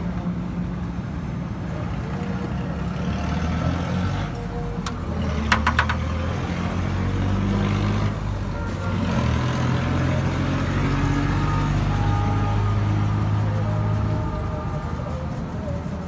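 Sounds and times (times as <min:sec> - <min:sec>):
motorcycle engine running: 0:04.2 - 0:16.0
sharp metallic taps: 0:04.8 - 0:06.4.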